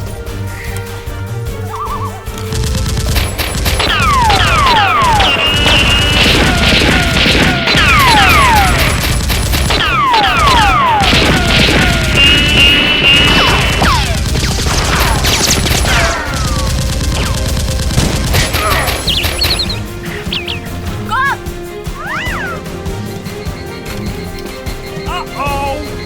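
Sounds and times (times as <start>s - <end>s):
action music with steady beat: 0.0s - 26.0s
rapid gunfire effects: 2.3s - 21.0s.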